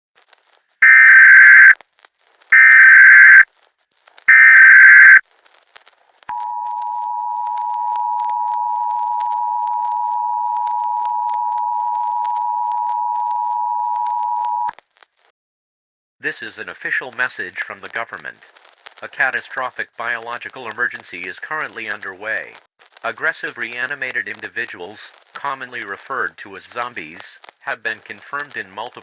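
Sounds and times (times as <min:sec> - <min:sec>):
data burst tones: 0:00.8 - 0:01.8, 0:02.5 - 0:03.4, 0:04.3 - 0:05.2
two-tone attention signal: 0:00.8 - 0:01.8, 0:02.6 - 0:03.4, 0:04.3 - 0:05.2.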